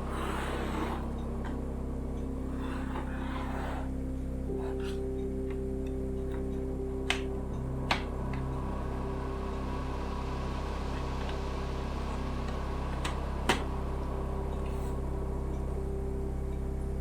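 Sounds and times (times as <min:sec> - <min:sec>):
background music with low notes: 0:00.0 - 0:17.0.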